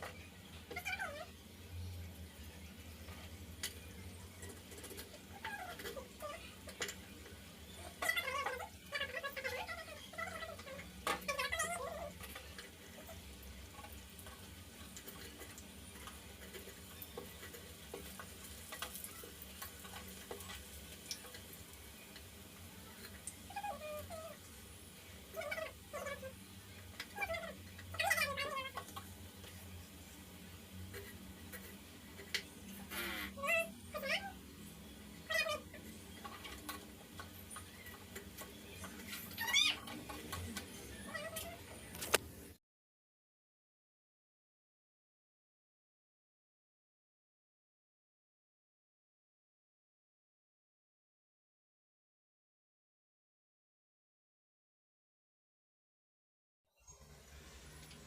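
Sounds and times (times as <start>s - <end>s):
batter frying in hot oil: 0.0s - 42.6s
small crackles and pops: 2.2s - 30.2s, 30.8s - 34.2s, 35.2s - 42.6s.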